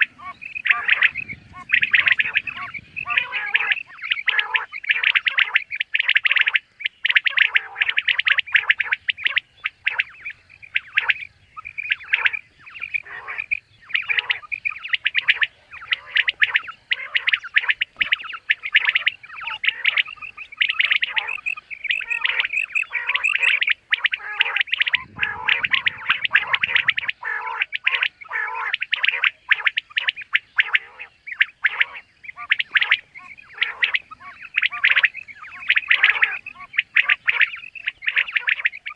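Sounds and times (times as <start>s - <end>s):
quail chirping calls: 0.0s - 38.9s.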